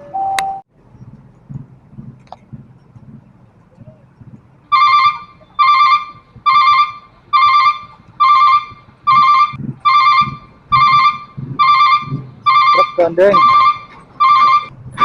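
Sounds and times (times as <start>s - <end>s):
level crossing warning bell: 4.7s - 14.7s.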